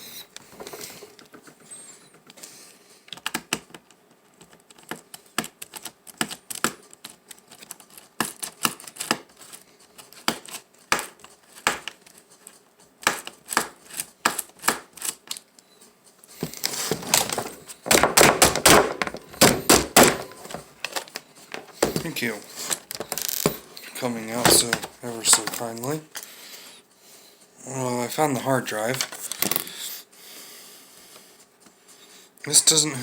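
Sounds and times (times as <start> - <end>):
parts rattling and scraping: 16.4 - 26.3.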